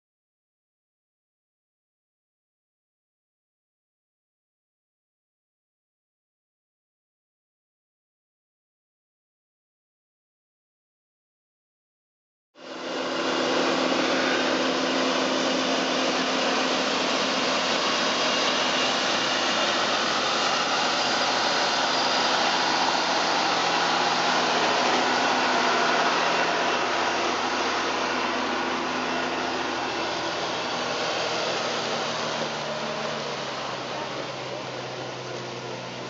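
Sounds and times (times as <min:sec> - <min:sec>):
diesel engine running: 0:12.6 - 0:36.0.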